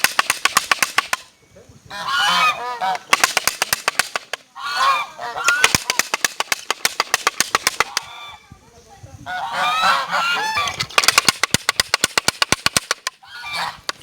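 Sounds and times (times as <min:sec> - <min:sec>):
rattle clacking rapidly: 0:00.0 - 0:01.3, 0:03.0 - 0:04.4, 0:05.5 - 0:08.1, 0:10.7 - 0:13.2
geese honking: 0:01.9 - 0:03.3, 0:04.1 - 0:06.2, 0:07.7 - 0:08.4, 0:09.2 - 0:10.9, 0:13.2 - 0:14.0.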